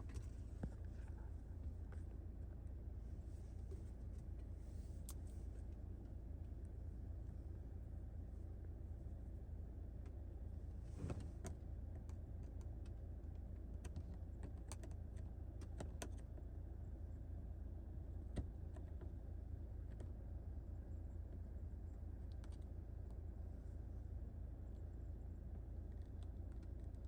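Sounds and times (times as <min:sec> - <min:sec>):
steady low hum: 0:00.0 - 0:27.0
small clicks and taps: 0:11.4 - 0:16.5.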